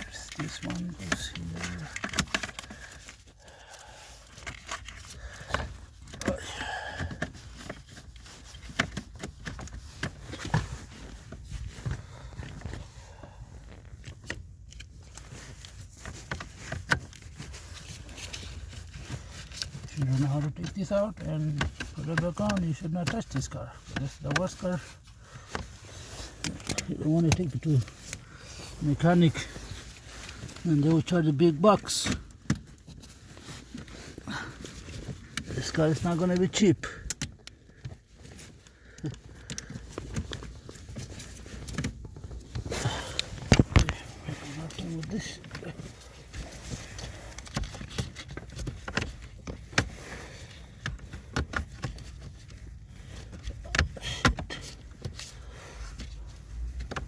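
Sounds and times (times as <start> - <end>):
clicks and taps of plastic parts: 0.2 - 3.2, 19.0 - 24.9.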